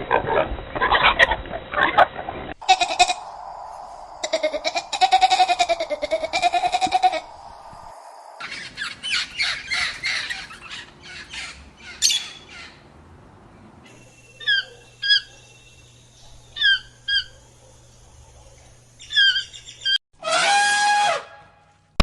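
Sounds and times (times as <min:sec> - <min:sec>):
birds squawking: 0:02.6 - 0:12.9, 0:14.0 - 0:15.4, 0:16.5 - 0:17.4, 0:19.0 - 0:20.0.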